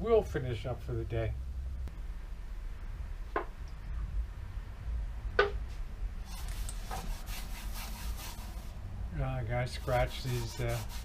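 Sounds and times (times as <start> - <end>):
rasping rub on wood: 6.3 - 8.7, 9.7 - 11.0
squeaky strokes on wood: 6.3 - 8.7, 9.7 - 11.0.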